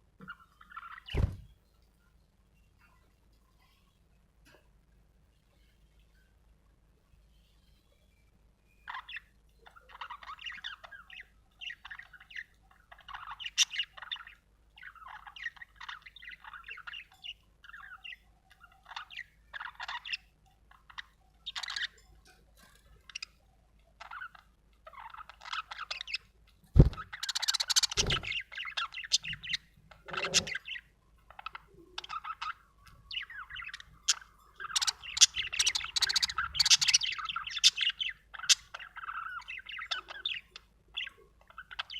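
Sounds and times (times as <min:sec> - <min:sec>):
budgerigar chirping: 0:26.9 - 0:41.9.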